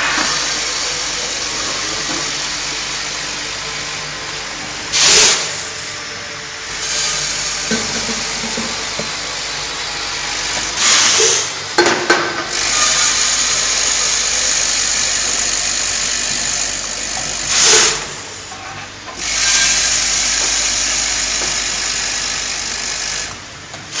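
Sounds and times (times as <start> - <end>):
filling machine hissing: 0.0 - 4.0, 4.6 - 11.8, 12.5 - 18.6, 19.2 - 24.0
machine air rushes: 0.0 - 18.5.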